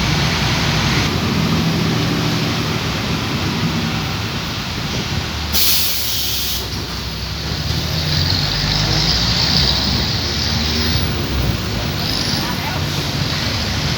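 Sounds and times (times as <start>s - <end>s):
heavy vehicle engine running: 0.0s - 13.9s
tyre hiss on wet road: 5.1s - 10.8s
burst of hissing air: 5.5s - 6.8s.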